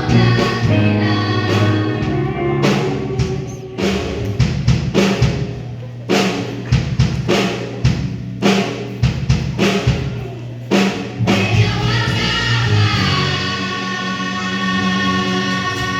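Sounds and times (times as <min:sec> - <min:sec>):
band holding a long chord: 0:00.0 - 0:05.7, 0:11.2 - 0:15.9
bass line: 0:00.0 - 0:15.9
drum kit beat: 0:00.0 - 0:15.9.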